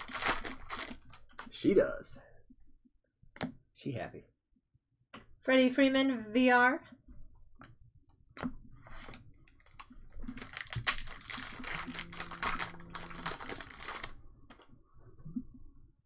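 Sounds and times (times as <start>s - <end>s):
foil wrapper tearing and crinkling: 0.0s - 1.3s, 9.6s - 14.2s.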